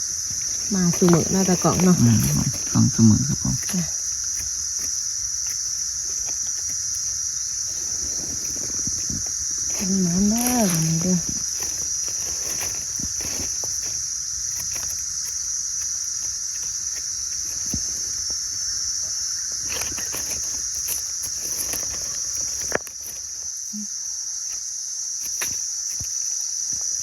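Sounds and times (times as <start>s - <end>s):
high-pitched insect chorus: 0.0s - 27.0s
light clicks and rustles: 3.6s - 18.4s, 19.6s - 23.8s.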